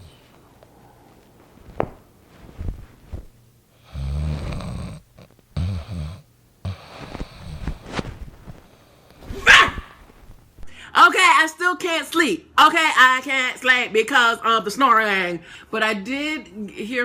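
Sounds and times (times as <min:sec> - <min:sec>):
man snoring: 0:03.8 - 0:07.6
breathing noises: 0:06.7 - 0:09.3, 0:10.6 - 0:11.0.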